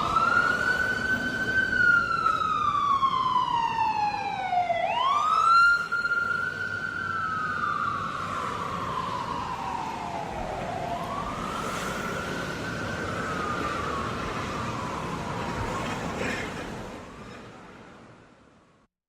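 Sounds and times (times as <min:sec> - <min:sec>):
ambulance siren wailing: 0:00.0 - 0:17.6.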